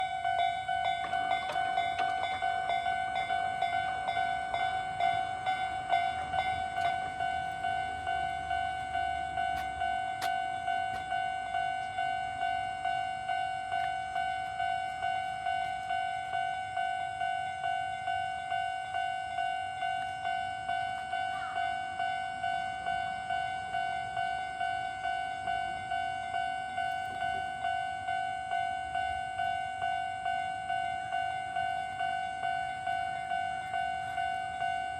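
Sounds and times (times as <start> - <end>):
level-crossing warning bell: 0.0 - 34.9.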